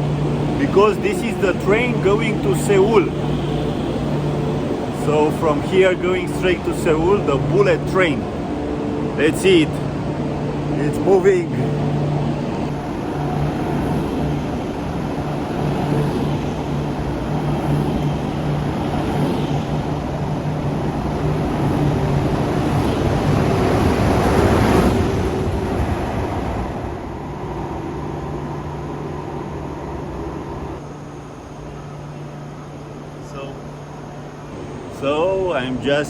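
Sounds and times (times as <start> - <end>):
steady low hum: 0.0 - 26.1
electric train rumble and hiss: 0.0 - 36.0.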